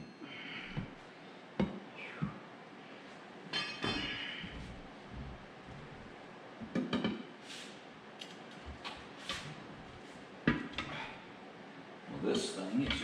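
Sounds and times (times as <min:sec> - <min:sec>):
scraping: 0:03.6 - 0:06.2.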